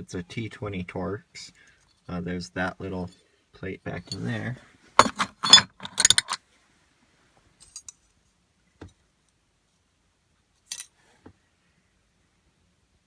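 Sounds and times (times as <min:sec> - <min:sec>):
metal parts clinking: 0:05.0 - 0:06.4, 0:07.6 - 0:08.0, 0:10.6 - 0:10.9.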